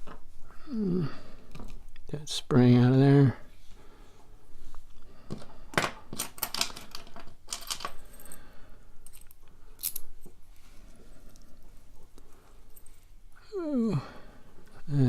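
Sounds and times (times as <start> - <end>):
metal lock pins clicking and jingling: 6.1 - 8.4, 9.0 - 10.3.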